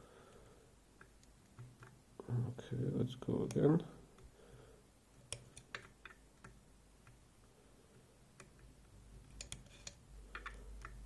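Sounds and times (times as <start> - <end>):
lock pick clicking on pins: 9.3 - 11.0.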